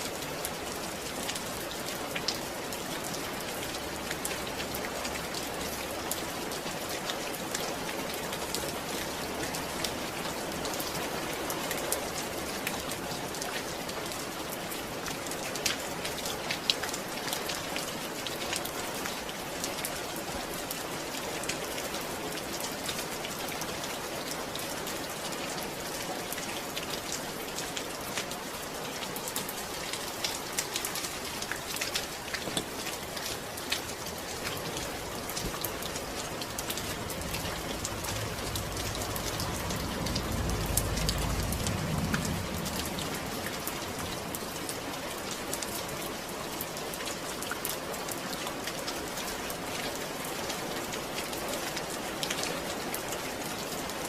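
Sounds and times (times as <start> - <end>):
steady rain hiss: 0.0 - 54.0
raindrop ticks: 29.3 - 46.0.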